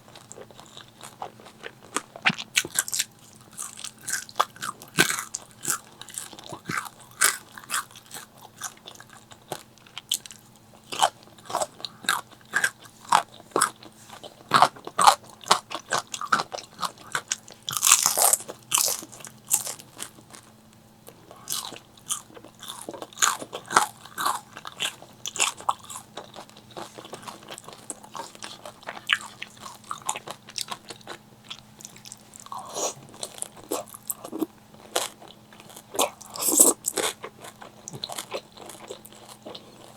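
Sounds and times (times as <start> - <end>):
crunching bites of fried chicken: 0.2 - 20.5, 21.1 - 39.9.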